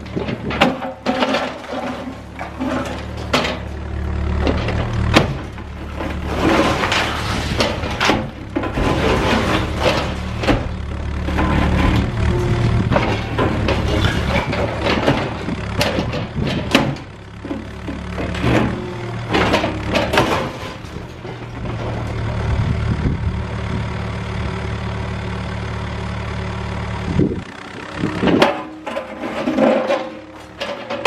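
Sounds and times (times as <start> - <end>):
concrete debris breaking and falling: 0.0 - 3.8, 4.7 - 22.1, 28.4 - 31.0
excavator diesel engine running: 0.0 - 31.0.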